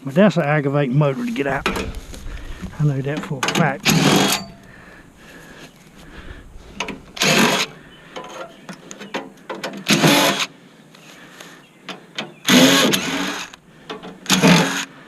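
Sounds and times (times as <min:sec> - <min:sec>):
metal scraping and rattling: 0:01.2 - 0:08.6.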